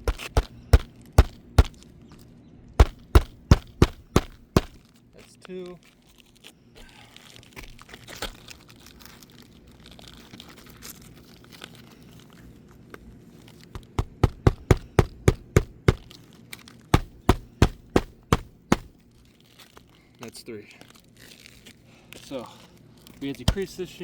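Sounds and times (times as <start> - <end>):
hammer striking nail: 0.0 - 1.8, 2.8 - 4.8, 14.0 - 16.0, 17.0 - 18.9
shingles rustling: 0.0 - 6.5.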